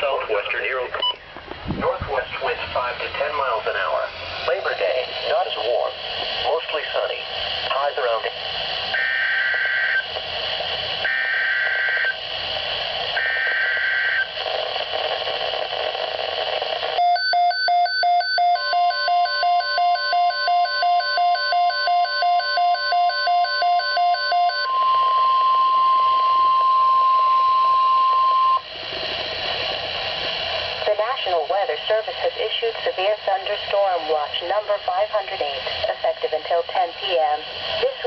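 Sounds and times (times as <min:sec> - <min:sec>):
radio hiss: 0:00.0 - 0:17.0, 0:28.6 - 0:38.0
steady warning alarm tone: 0:08.9 - 0:10.1, 0:11.0 - 0:12.2, 0:13.2 - 0:14.3, 0:16.9 - 0:28.7
rapid pulsing electronic beep: 0:17.0 - 0:26.2.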